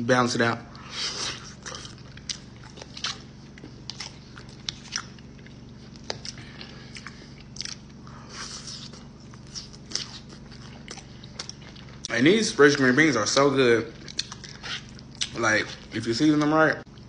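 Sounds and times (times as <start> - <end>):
person chewing crunchy food: 0.8 - 12.1, 13.9 - 16.0.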